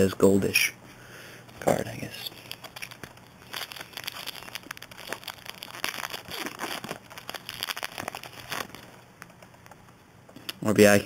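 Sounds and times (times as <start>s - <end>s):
wrapper tearing and crinkling: 1.5s - 9.8s.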